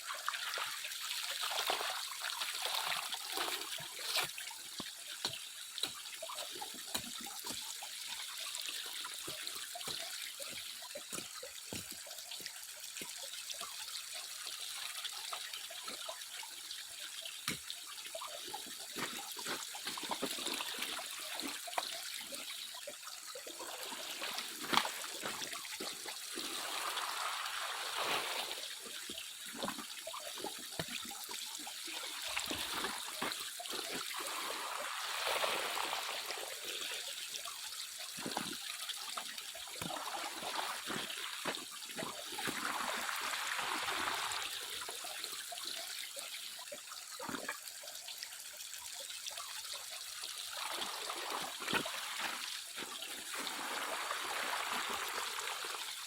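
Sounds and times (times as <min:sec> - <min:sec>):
shallow water trickling: 0:00.0 - 0:56.0
small splashes and clicks: 0:01.3 - 0:13.9, 0:17.0 - 0:26.6, 0:28.8 - 0:34.4, 0:36.9 - 0:40.1, 0:51.4 - 0:53.4.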